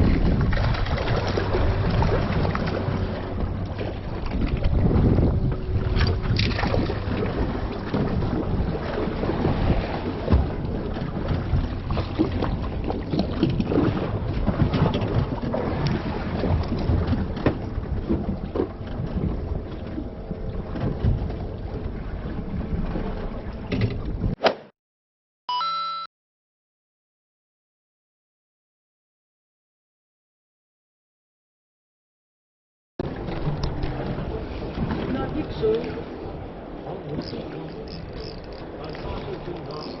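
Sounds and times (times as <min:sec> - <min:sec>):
low engine hum: 0:00.0 - 0:24.4, 0:33.0 - 0:40.0
wind buffeting microphone: 0:00.0 - 0:24.4.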